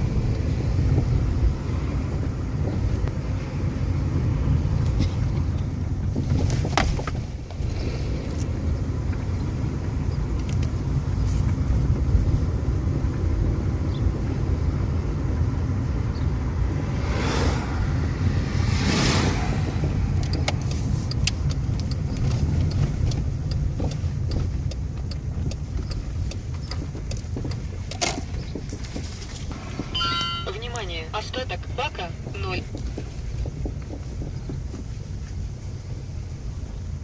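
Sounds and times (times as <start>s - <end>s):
car road rumble: 0.0s - 37.0s
passing vehicle noise: 0.0s - 37.0s
suspension knocking: 17.9s - 36.7s.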